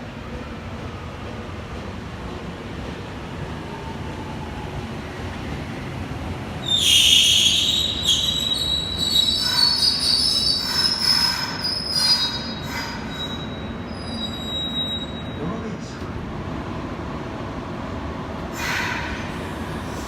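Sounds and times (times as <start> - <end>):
low rumble of moving train: 0.0 - 20.0
train wheels squealing: 6.6 - 15.7, 18.6 - 20.0.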